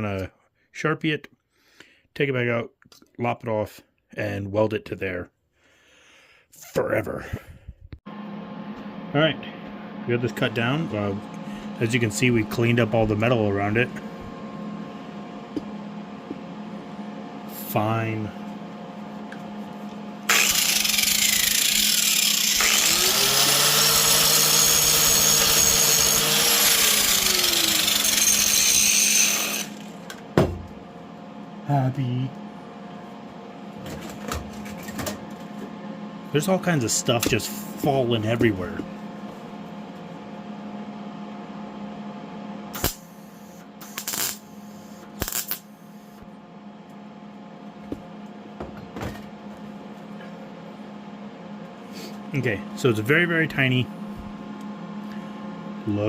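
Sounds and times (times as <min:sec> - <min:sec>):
steady hum: 0:03.6 - 0:56.0
electric grinder grinding steel: 0:20.3 - 0:30.0
welder crackling: 0:20.3 - 0:30.0, 0:43.8 - 0:44.5, 0:45.2 - 0:45.7.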